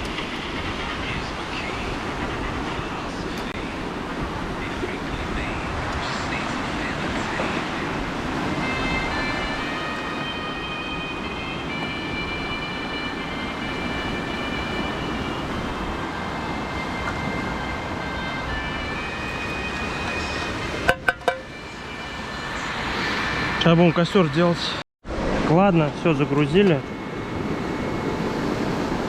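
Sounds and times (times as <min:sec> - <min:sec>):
rushing background noise: 0:00.0 - 0:29.0
distant siren: 0:06.6 - 0:24.8, 0:26.0 - 0:29.0
sharp knocks: 0:20.0 - 0:21.5.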